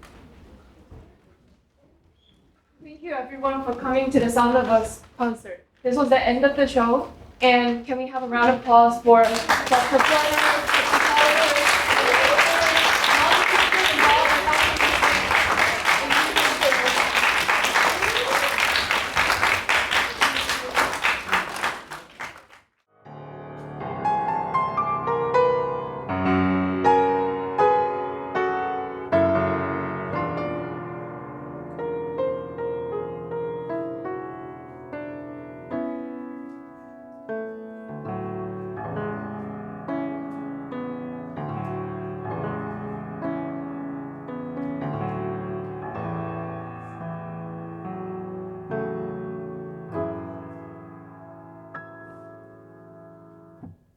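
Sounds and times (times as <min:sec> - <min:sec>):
audience applauding: 0:09.2 - 0:22.6
solo piano piece: 0:23.0 - 0:53.9.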